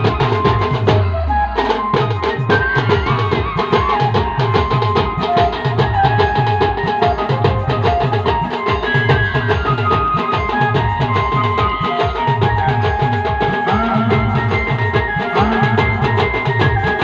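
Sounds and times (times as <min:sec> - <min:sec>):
band music: 0:00.0 - 0:17.0
deep kick drum beat: 0:12.4 - 0:17.0.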